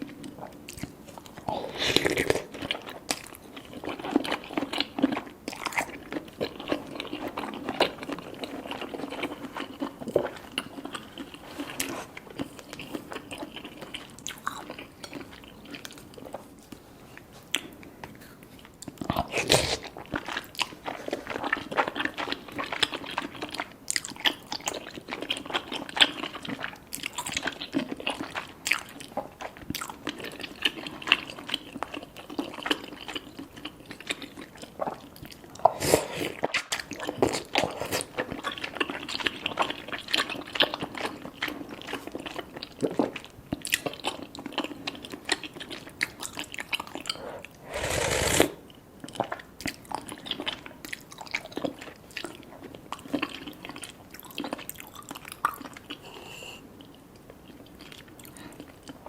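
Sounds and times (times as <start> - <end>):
wet chewing and biting: 0.4 - 16.6
mouth clicks and smacks: 0.7 - 3.2.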